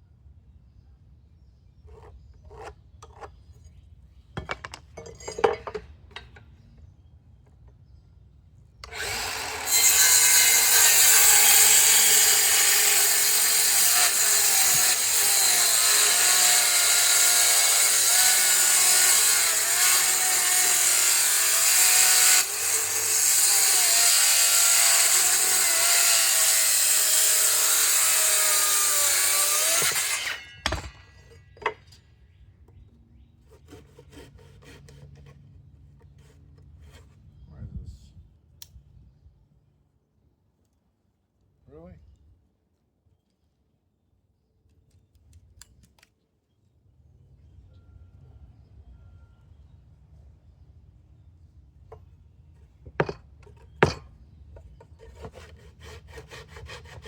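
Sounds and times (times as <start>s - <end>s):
power saw cutting wood: 8.8s - 31.1s, 55.0s - 57.0s.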